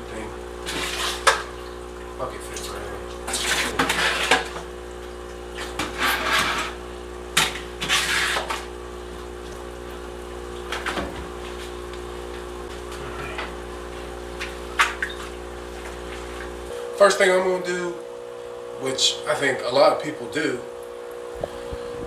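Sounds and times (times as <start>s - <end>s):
small water pump humming: 0.0s - 22.0s
water sloshing: 0.5s - 16.7s.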